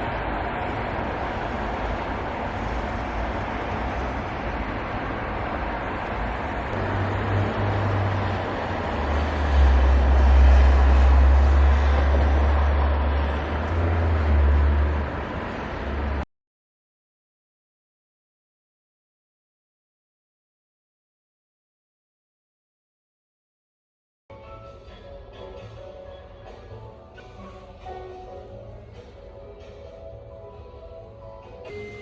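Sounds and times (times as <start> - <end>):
heavy low rumble: 0.0 - 16.2
car road noise: 0.0 - 16.3, 24.7 - 32.0.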